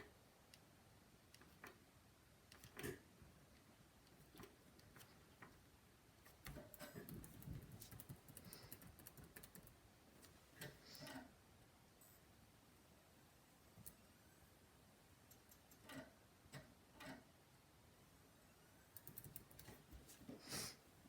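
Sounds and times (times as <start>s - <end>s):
computer keyboard typing: 6.3s - 9.8s, 19.0s - 19.8s.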